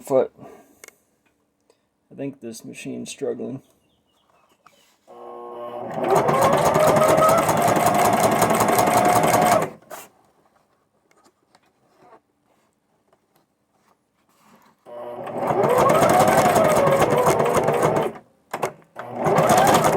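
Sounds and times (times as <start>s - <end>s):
sewing machine stitching: 5.7s - 10.0s, 14.9s - 19.9s.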